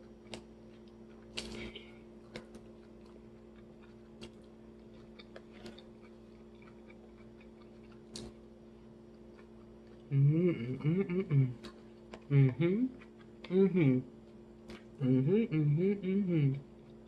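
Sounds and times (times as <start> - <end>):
person chewing food: 0.0 - 15.0, 16.7 - 17.0
low hum: 0.0 - 17.0.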